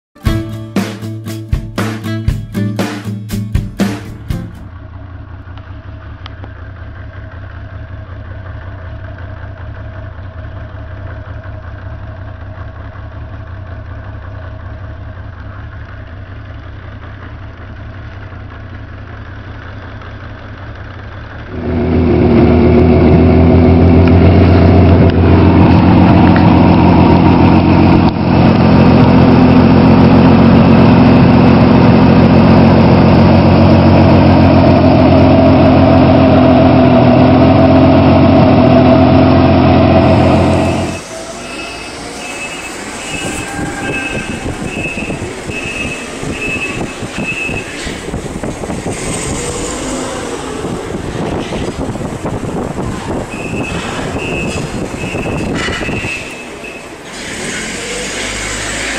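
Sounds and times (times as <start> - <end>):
motorcycle engine idling: 4.5 - 21.6.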